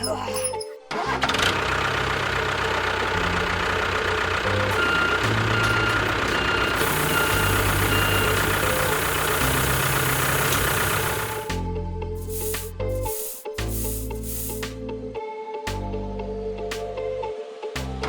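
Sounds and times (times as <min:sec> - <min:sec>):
vehicle engine running: 0:00.0 - 0:14.7.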